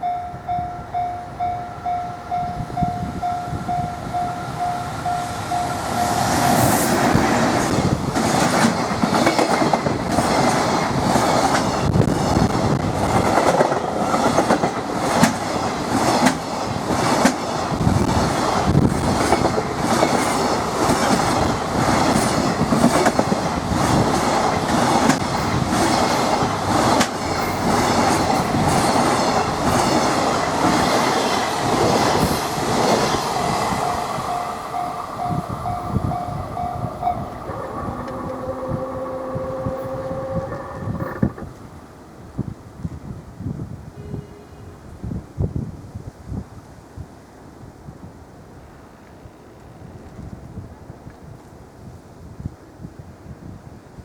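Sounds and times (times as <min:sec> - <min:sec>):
level crossing warning bell: 0:00.0 - 0:06.7, 0:33.2 - 0:41.2
train wheels clattering over rail joints: 0:06.4 - 0:41.6.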